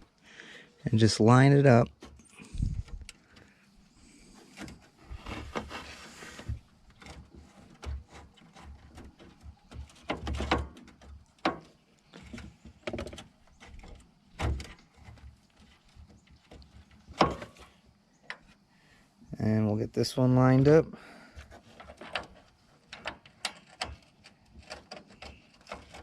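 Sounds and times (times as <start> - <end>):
metal clicks knocks and scraping: 4.3 - 18.6, 21.4 - 26.0.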